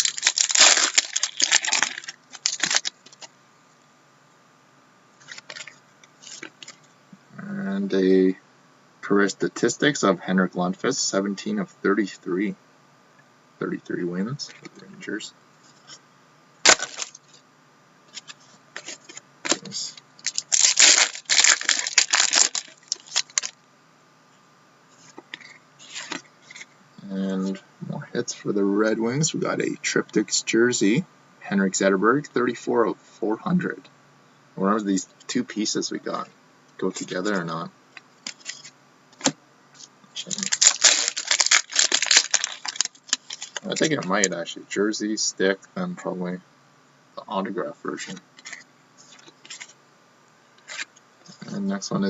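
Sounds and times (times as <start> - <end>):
trading card packaging crinkling: 0.0 - 3.3, 5.2 - 6.8, 16.7 - 17.4, 18.1 - 23.6, 25.3 - 26.7, 38.2 - 44.4, 48.4 - 49.8, 50.6 - 50.9.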